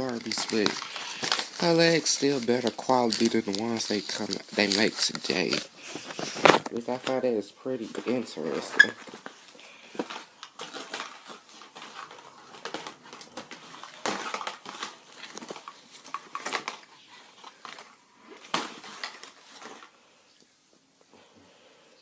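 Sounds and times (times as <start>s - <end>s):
cardboard and plastic packaging crackling: 0.0s - 20.2s.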